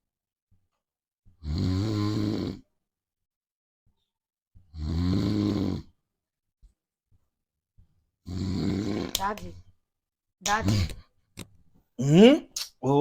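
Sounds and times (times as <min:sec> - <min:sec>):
man snoring: 0:01.4 - 0:02.7, 0:04.7 - 0:06.0, 0:08.2 - 0:09.2.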